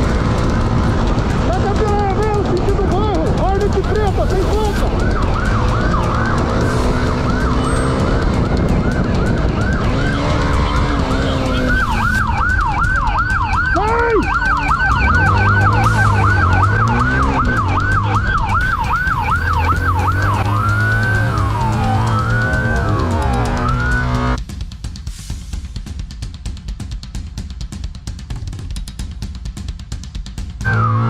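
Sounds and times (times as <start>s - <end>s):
road and engine rumble: 0.0s - 29.3s, 30.3s - 31.0s
police siren yelping: 1.7s - 24.4s, 30.7s - 31.0s.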